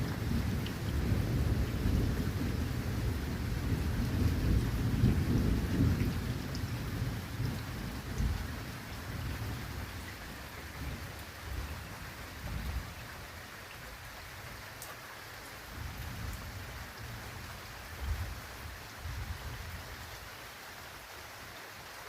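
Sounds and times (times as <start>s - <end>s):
thunder rumbling: 0.0s - 10.0s
steady rain: 0.0s - 22.0s.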